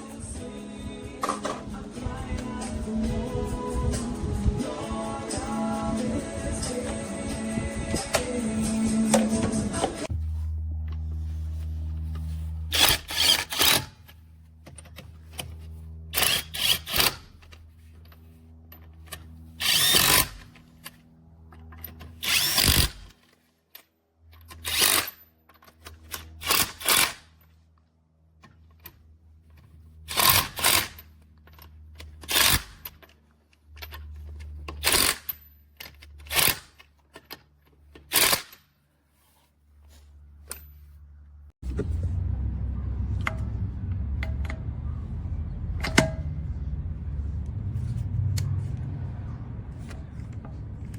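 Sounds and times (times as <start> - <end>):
steady low hum: 0.0 - 23.2, 39.5 - 50.9
impact wrench bursts: 12.7 - 14.1, 16.1 - 17.3, 19.6 - 20.5, 22.2 - 23.2, 30.1 - 31.1, 32.1 - 32.9, 34.7 - 35.4, 38.0 - 38.6.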